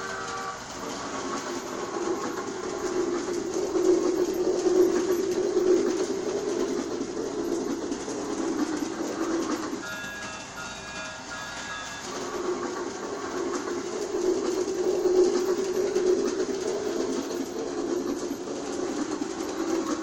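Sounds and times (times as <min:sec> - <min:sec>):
multi-tone train whistle: 0:00.0 - 0:01.2, 0:09.8 - 0:12.8
toy train motor and wheels rumbling: 0:00.0 - 0:20.0.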